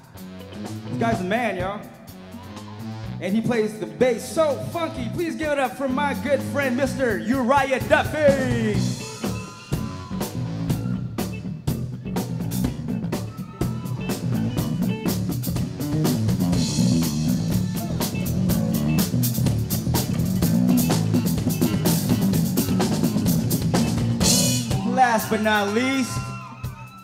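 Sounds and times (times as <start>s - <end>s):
electric bass funky line: 0.0s - 3.4s, 4.2s - 26.4s
drum kit beat: 0.0s - 27.0s.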